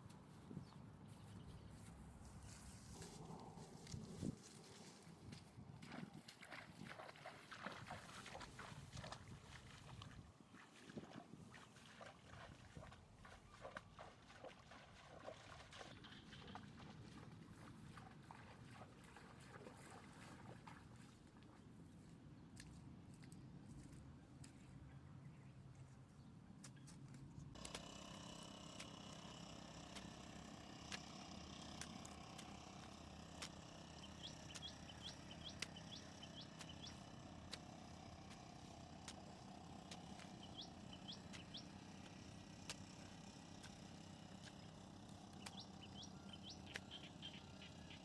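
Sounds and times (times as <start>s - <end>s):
low steady hum: 0.0s - 48.0s.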